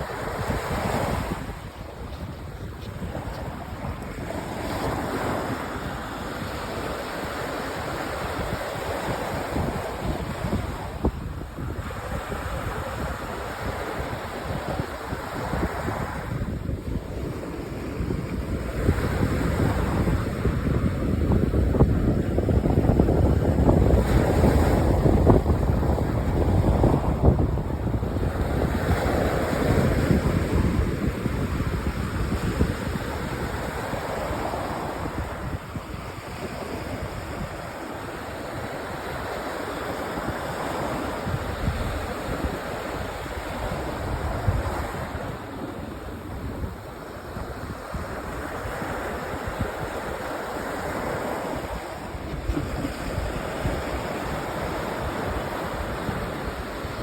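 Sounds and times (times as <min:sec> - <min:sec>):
waves washing onto beach: 0:00.0 - 0:57.0
wind rumbling on microphone: 0:00.0 - 0:57.0.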